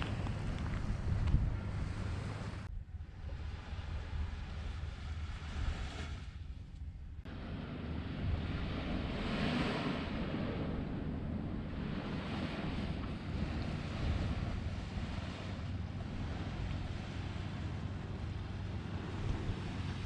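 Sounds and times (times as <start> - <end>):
wind buffeting microphone: 0.0 - 20.0
sea waves washing onto beach: 7.3 - 20.0.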